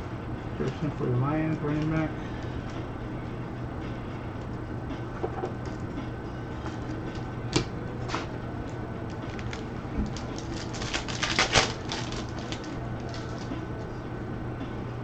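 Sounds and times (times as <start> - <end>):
trading cards clicking and snapping: 8.6 - 13.6.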